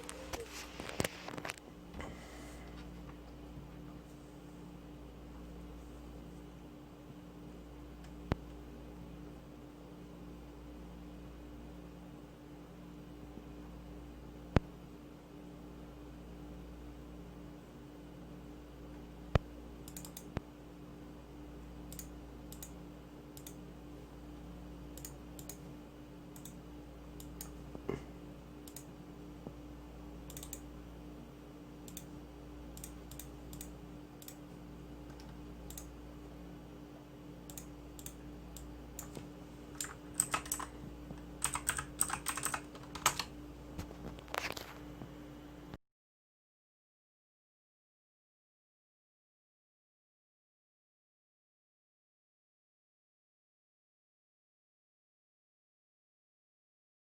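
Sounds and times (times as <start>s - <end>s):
steady low hum: 0.0s - 45.8s
computer keyboard typing: 30.3s - 30.6s, 37.5s - 43.3s.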